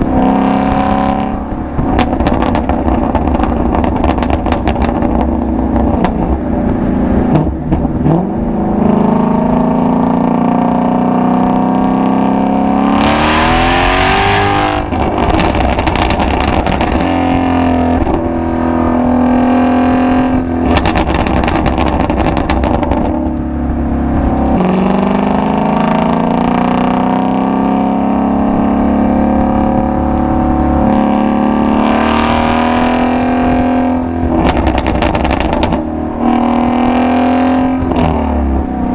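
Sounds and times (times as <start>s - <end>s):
car engine accelerating hard: 0.0s - 38.9s.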